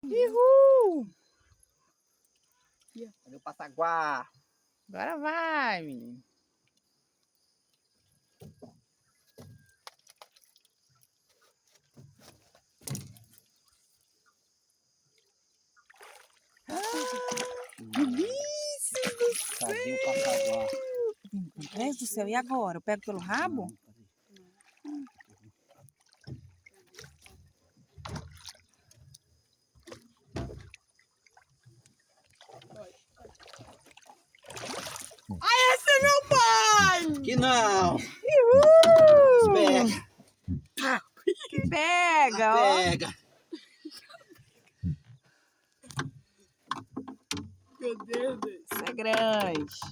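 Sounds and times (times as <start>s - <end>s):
thuds around a boat: 11.9s - 13.4s, 27.2s - 28.6s, 29.8s - 30.8s, 34.5s - 40.8s, 45.8s - 49.9s
water splashing: 15.1s - 43.3s, 44.4s - 49.9s.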